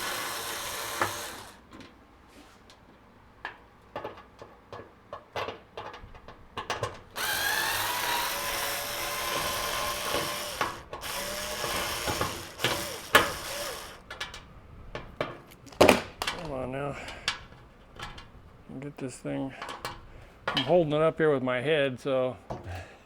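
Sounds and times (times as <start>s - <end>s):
cordless driver spinning: 0.0s - 1.6s, 7.2s - 14.0s
screws and parts clicking: 0.0s - 1.6s, 7.2s - 14.0s.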